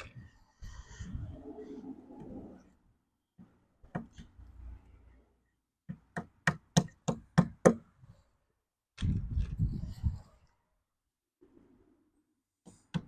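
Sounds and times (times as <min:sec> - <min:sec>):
knocks on wooden dowels: 0:05.9 - 0:07.8.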